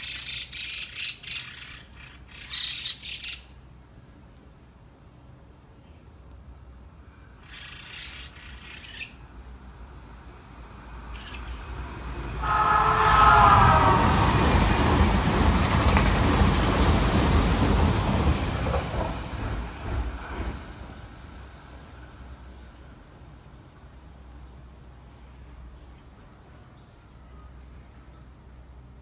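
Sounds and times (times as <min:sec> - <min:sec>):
train rumbling past: 0:08.4 - 0:29.0
train whistle blast: 0:12.4 - 0:14.6.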